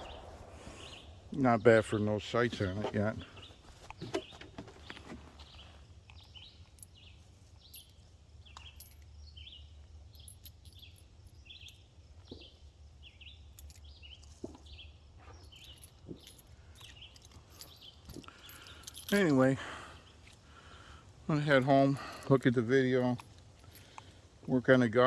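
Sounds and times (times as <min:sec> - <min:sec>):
low rumble: 0:00.0 - 0:02.4
birds chirping: 0:00.0 - 0:25.0.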